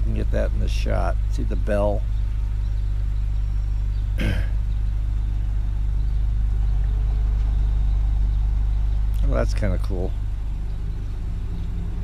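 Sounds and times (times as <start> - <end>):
person clearing throat: 4.2 - 4.6.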